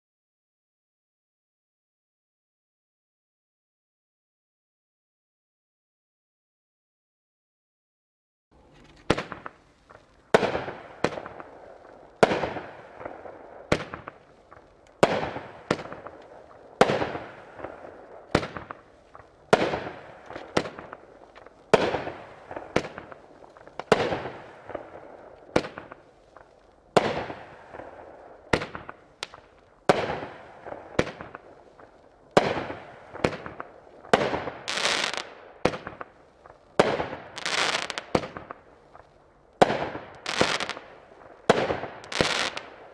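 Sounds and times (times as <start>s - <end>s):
fireworks cake bangs: 8.6s - 27.9s, 28.5s - 40.8s.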